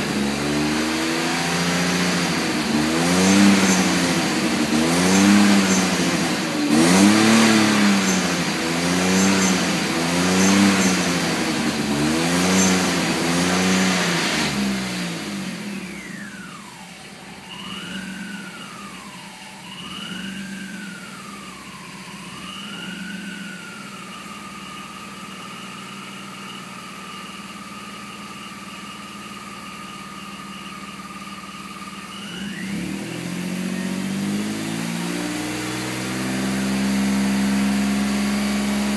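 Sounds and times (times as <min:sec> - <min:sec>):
car engine idling: 0:00.0 - 0:38.9
car engine revving: 0:00.0 - 0:38.9.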